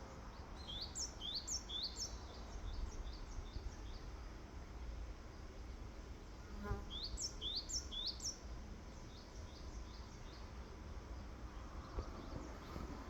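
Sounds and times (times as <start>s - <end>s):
bird singing whistled notes: 0.6s - 3.2s, 6.9s - 8.4s.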